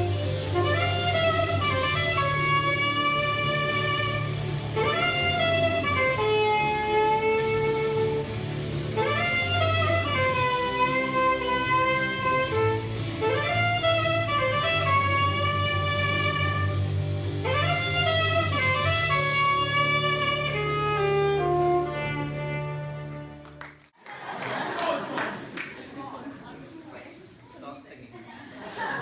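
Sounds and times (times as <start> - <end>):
steady low accompaniment: 0.0 - 23.6.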